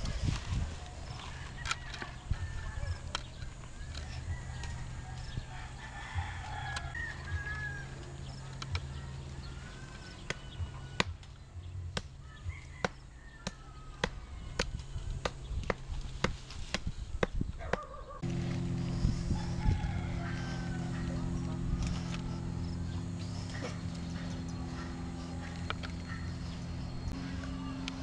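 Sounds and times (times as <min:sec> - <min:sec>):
rooster crowing: 0:01.1 - 0:03.1, 0:03.8 - 0:11.0, 0:12.2 - 0:14.5, 0:17.8 - 0:27.9
steady low hum: 0:13.9 - 0:28.0
chickens clucking: 0:17.6 - 0:27.8
machine-like hum: 0:18.2 - 0:28.0.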